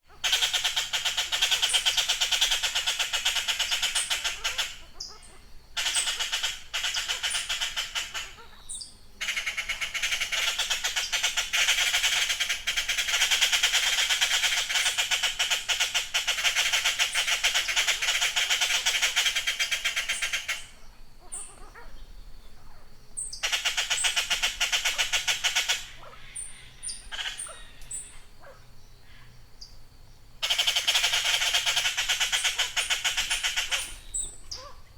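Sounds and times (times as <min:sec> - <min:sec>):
blue jays harsh calls: 0:23.4 - 0:29.3, 0:30.4 - 0:34.9.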